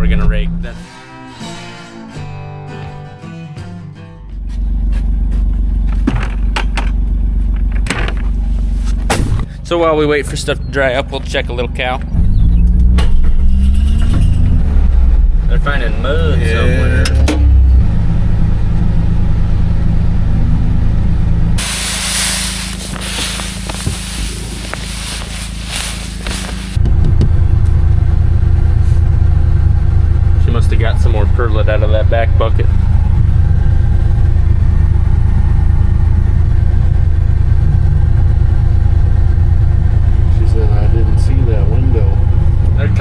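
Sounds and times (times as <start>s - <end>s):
vehicle engine droning: 0.0s - 43.0s
broad steady hiss: 21.6s - 26.8s.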